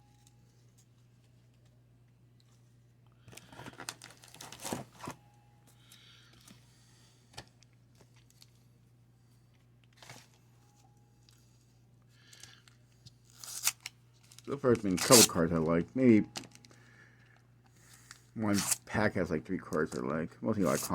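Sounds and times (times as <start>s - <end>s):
paper pack ripping and crinkling: 3.4s - 5.2s, 13.3s - 15.8s, 18.5s - 18.9s, 19.7s - 20.9s
steady low hum: 5.1s - 20.9s.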